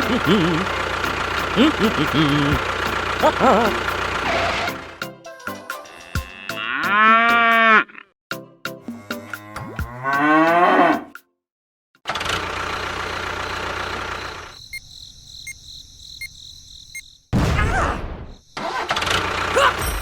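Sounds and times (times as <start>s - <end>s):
cow mooing: 5.9s - 8.0s, 8.8s - 11.2s
mechanical running noise: 12.1s - 14.9s
faint regular ticks: 14.6s - 17.2s.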